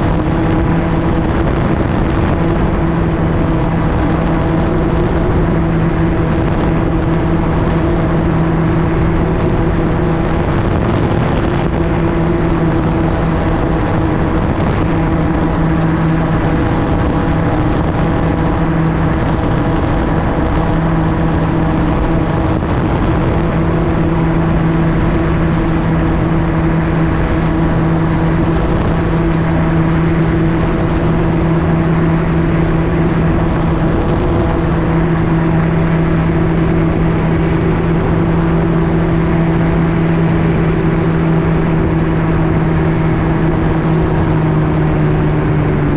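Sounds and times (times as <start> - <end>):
propeller engine droning: 0.0 - 45.9
rush of air: 0.0 - 45.9.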